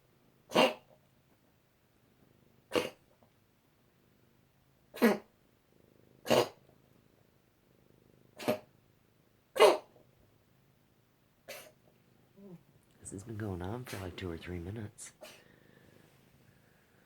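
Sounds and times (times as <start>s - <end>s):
pet coughing: 0.5s - 0.9s, 2.7s - 3.1s, 4.9s - 5.3s, 6.2s - 6.6s, 8.4s - 8.7s, 9.6s - 10.0s, 11.5s - 11.8s.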